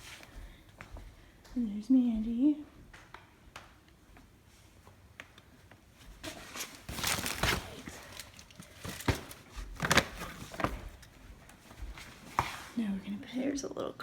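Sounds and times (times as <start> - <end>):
rustling and crinkling handling: 5.6 - 13.2.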